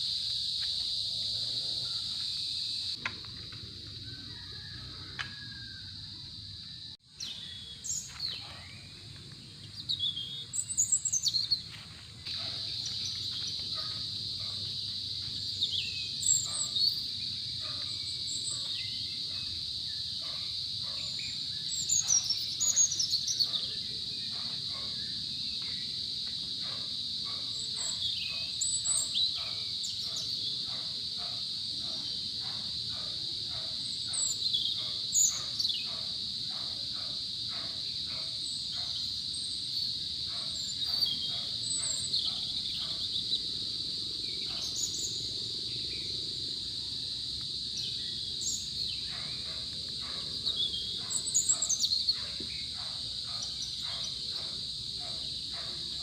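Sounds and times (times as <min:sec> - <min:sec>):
crickets chirping: 0:00.0 - 0:56.0
birds chirping: 0:07.1 - 0:19.6, 0:20.2 - 0:26.0, 0:26.6 - 0:39.1, 0:39.8 - 0:43.4, 0:44.3 - 0:45.3, 0:47.8 - 0:56.0.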